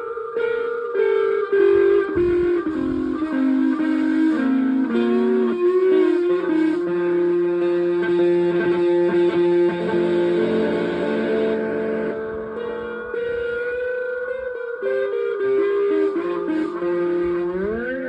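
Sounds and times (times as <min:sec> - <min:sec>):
electronic pitched notes stepping: 0:02.0 - 0:04.6, 0:08.0 - 0:14.5
low electronic drone: 0:02.1 - 0:03.8, 0:09.4 - 0:14.3.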